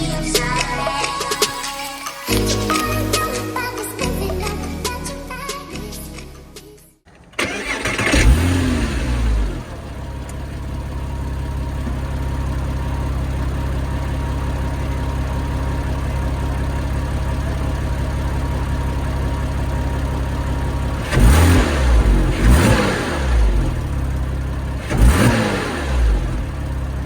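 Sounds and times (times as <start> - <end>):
car engine idling and revving: 7.1 - 27.0.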